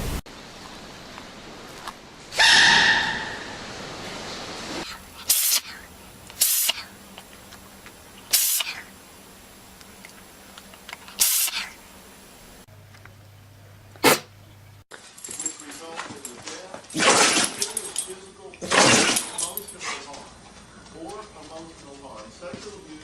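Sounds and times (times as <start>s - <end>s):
animal sneezing: 4.8s - 7.0s, 8.3s - 8.9s, 11.1s - 11.8s, 14.0s - 14.3s.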